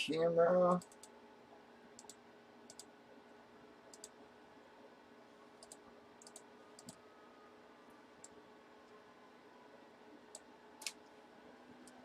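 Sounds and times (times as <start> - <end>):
faint computer clicks: 0.7 - 1.2, 2.0 - 2.9, 3.9 - 4.2, 5.6 - 7.0.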